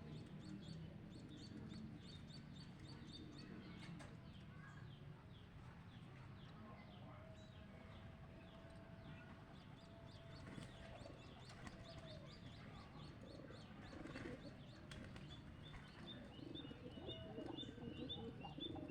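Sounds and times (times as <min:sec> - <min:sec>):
pigeons cooing: 0:13.1 - 0:14.6, 0:16.2 - 0:18.9.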